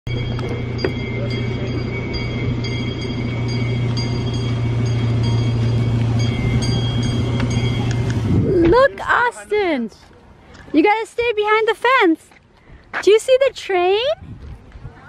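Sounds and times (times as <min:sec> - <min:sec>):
small train engine humming: 0:00.1 - 0:10.9.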